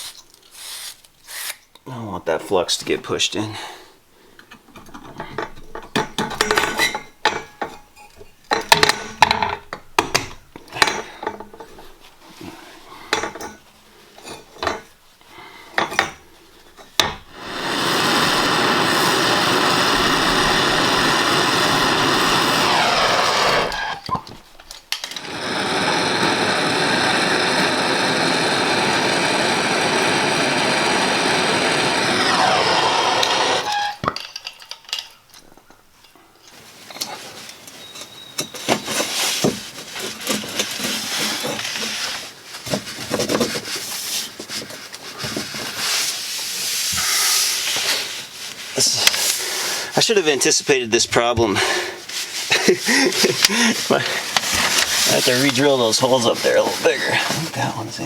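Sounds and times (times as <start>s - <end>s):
soldering torch hissing: 0.0s - 1.6s, 17.2s - 24.2s, 25.1s - 34.0s, 52.5s - 57.6s.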